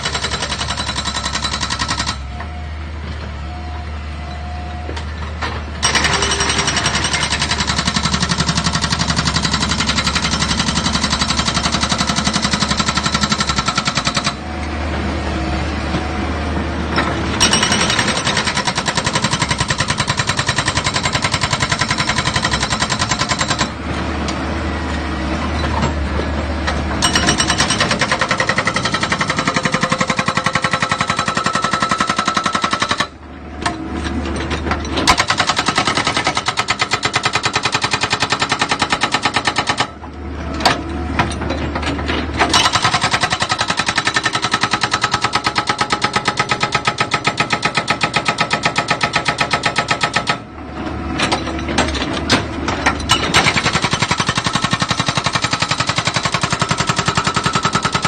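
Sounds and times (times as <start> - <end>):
machinery pounding and rattling: 16.0 - 58.0.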